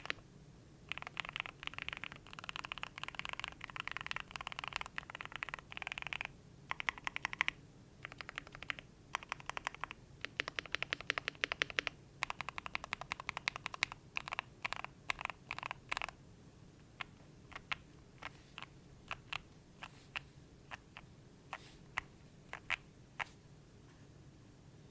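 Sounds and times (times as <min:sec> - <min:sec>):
keyboard keystrokes: 0:00.9 - 0:16.1.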